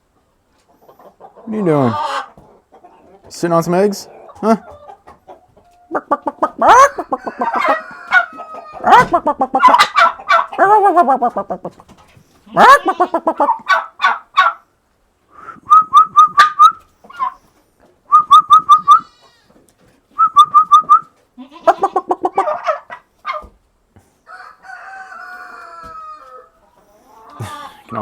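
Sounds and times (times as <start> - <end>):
turkeys yelping: 0.7 - 3.3, 4.0 - 11.8, 12.6 - 14.7, 15.8 - 19.2, 21.6 - 23.6, 24.3 - 27.8
turkey gobble: 0.8 - 3.2, 4.0 - 11.8, 12.6 - 14.7, 15.7 - 17.4, 18.1 - 19.2, 21.7 - 23.5
turkey falling call: 5.9 - 11.7, 12.6 - 14.6, 15.9 - 17.4, 18.2 - 19.1.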